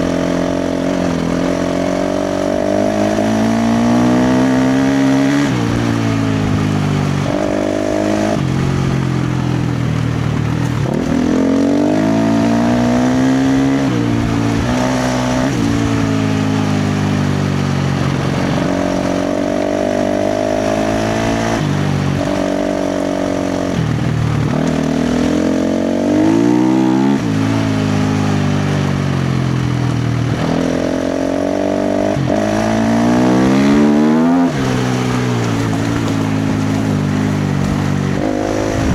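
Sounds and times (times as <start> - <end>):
dirt bike engine revving: 0.0 - 38.9.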